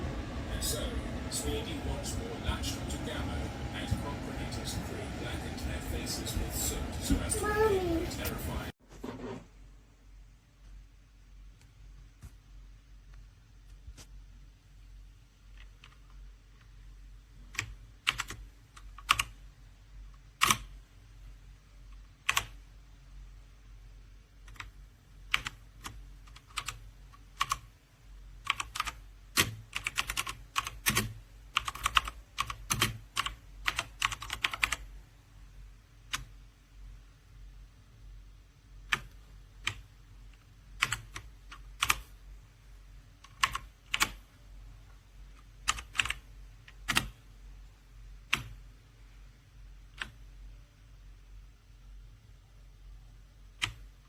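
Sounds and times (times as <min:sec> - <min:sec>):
clicky mechanical keyboard typing: 0:15.5 - 0:16.7, 0:17.5 - 0:19.4, 0:20.4 - 0:20.8, 0:22.0 - 0:22.6, 0:24.4 - 0:27.7, 0:28.4 - 0:34.8, 0:38.9 - 0:42.1, 0:43.2 - 0:44.2, 0:45.4 - 0:47.2, 0:48.3 - 0:48.6.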